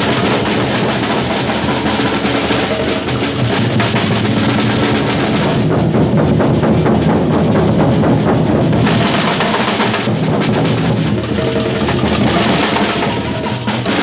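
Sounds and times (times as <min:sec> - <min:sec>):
fast snare strokes: 0:00.0 - 0:05.7, 0:11.2 - 0:14.0
samba drum ensemble: 0:00.0 - 0:14.0.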